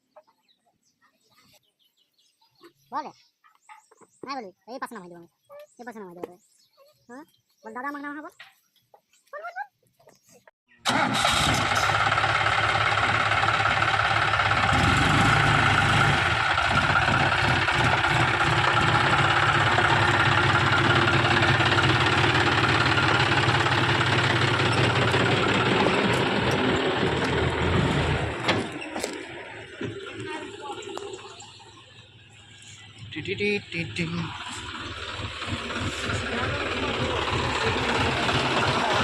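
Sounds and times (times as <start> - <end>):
tractor diesel engine running: 10.8 - 39.0.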